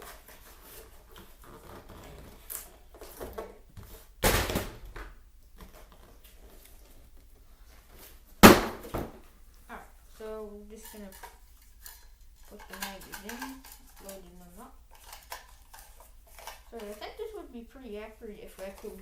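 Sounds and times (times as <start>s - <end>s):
plastic parts rustling and clicking: 10.2s - 17.4s, 18.0s - 19.0s.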